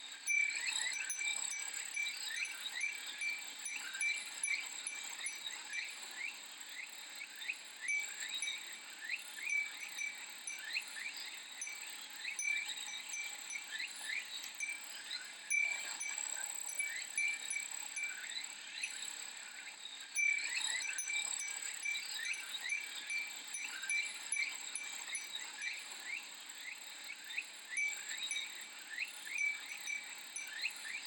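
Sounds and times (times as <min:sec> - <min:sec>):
cicadas droning: 0:00.0 - 0:31.0
wind chime ringing: 0:00.3 - 0:05.9, 0:07.8 - 0:08.7, 0:09.4 - 0:19.0, 0:20.2 - 0:26.1, 0:27.7 - 0:28.6, 0:29.3 - 0:31.0.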